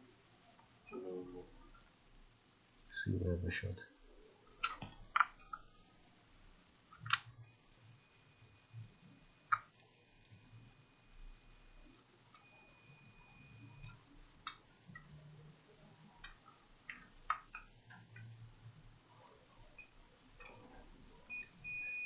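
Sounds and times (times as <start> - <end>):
multimeter continuity beep: 7.4 - 15.1, 21.3 - 22.0.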